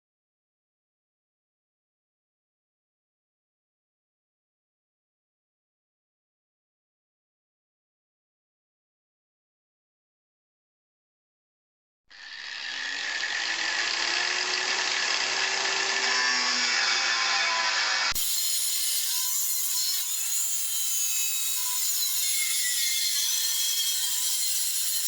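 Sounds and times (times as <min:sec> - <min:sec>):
power tool cutting: 0:12.1 - 0:25.0.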